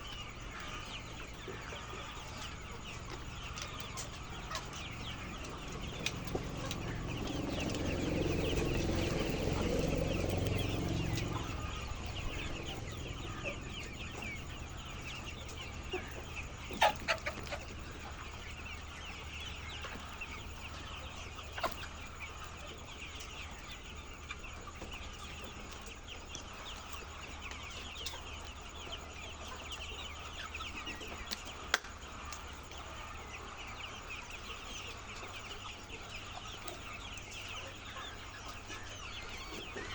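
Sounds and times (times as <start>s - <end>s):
hens clucking: 0.0s - 39.9s
low rumble: 4.8s - 16.3s.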